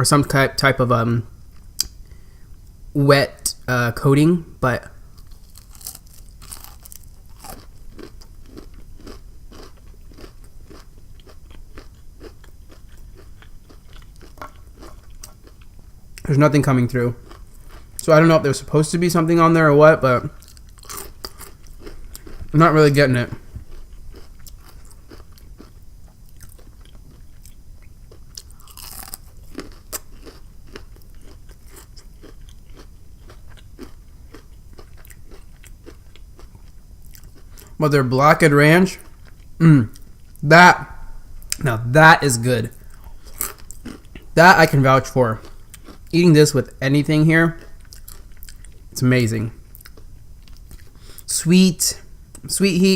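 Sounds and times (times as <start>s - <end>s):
crunchy chewing: 5.0s - 16.3s, 17.0s - 18.2s, 20.2s - 37.8s, 42.3s - 46.8s, 47.5s - 49.0s, 49.6s - 51.3s.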